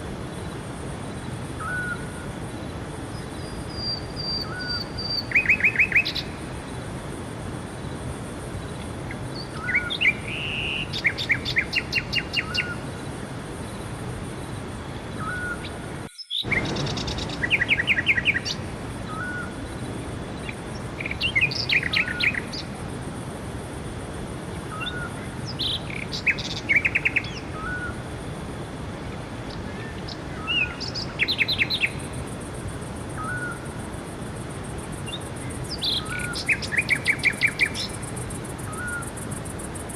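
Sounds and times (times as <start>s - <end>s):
steady background hiss: 0.0s - 39.9s
bird calls: 1.6s - 2.2s, 3.2s - 6.4s, 9.1s - 12.8s, 15.1s - 19.8s, 20.4s - 22.7s, 24.7s - 28.0s, 29.5s - 32.1s, 33.2s - 33.7s, 35.1s - 39.2s
songbirds singing: 1.6s - 6.9s, 8.6s - 22.8s, 24.6s - 28.1s, 29.0s - 32.4s, 33.2s - 33.8s, 34.8s - 39.7s.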